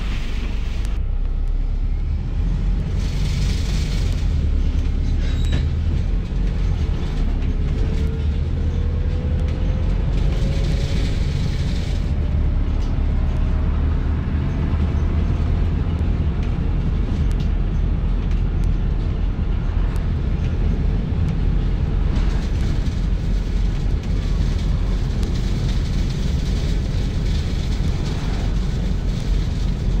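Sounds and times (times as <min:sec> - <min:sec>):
bus engine and road rumble: 0:00.0 - 0:30.0.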